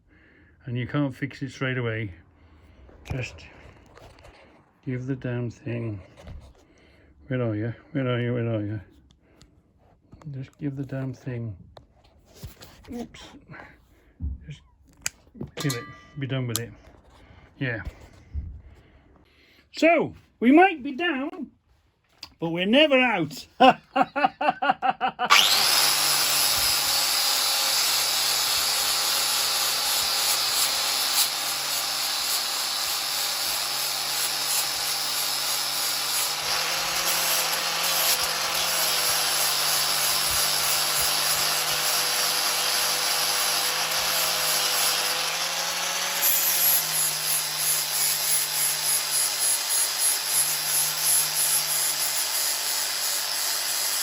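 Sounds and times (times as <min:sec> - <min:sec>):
electric grinder grinding steel: 0:25.3 - 0:54.0.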